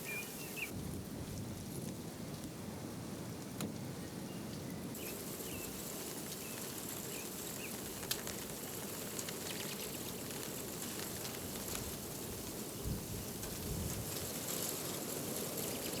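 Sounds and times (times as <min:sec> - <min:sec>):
steady rain: 0:05.0 - 0:16.0.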